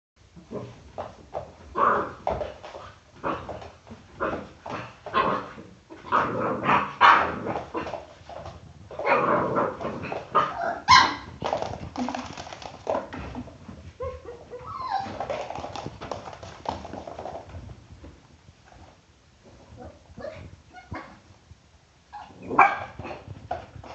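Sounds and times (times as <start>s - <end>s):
dog yipping and snorting: 10.4s - 11.4s, 14.0s - 15.4s
dog whining: 14.0s - 15.3s.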